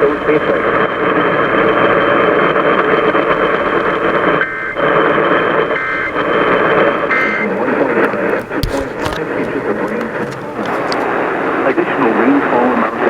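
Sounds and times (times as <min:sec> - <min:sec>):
radio static hiss: 0:06.2 - 0:13.0.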